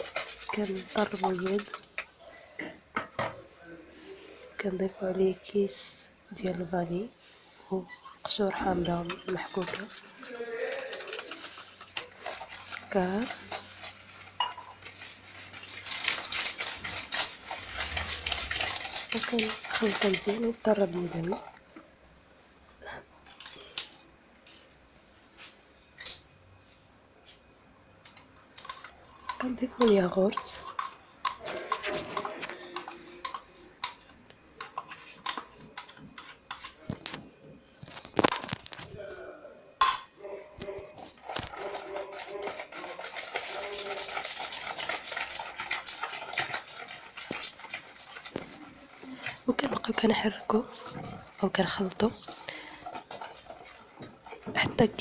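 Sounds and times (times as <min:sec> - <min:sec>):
utensil stirring batter in bowl: 0:00.0 - 0:03.2, 0:06.3 - 0:22.0, 0:27.2 - 0:39.2, 0:39.8 - 0:55.0
utensil clinking against bowl: 0:07.9 - 0:15.0, 0:39.8 - 0:55.0.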